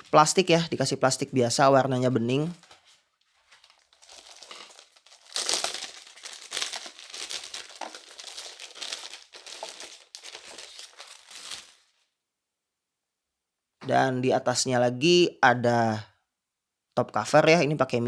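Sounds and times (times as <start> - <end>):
plastic wrap crinkling: 2.5 - 12.0.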